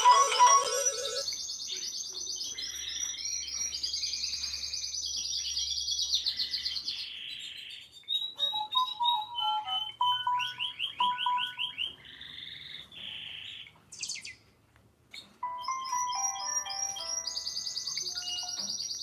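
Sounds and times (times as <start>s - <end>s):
bright electronic ringtone notes: 0.0s - 1.3s, 9.4s - 11.8s, 15.4s - 18.7s
birdsong ringtone chirping trills: 0.0s - 14.4s, 15.4s - 19.0s.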